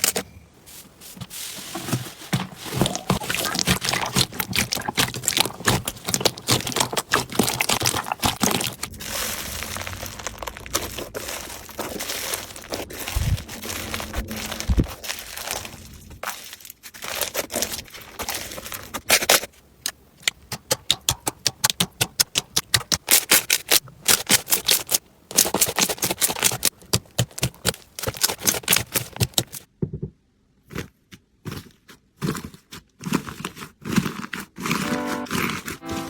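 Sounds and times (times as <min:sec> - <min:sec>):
slime crackling and popping: 0:02.8 - 0:19.2, 0:19.9 - 0:29.7.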